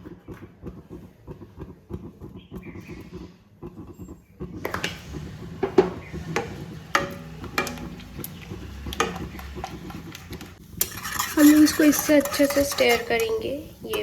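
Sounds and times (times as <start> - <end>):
stirring milk in a pan: 0.0 - 14.0
utensil knocking against pan: 5.7 - 10.0.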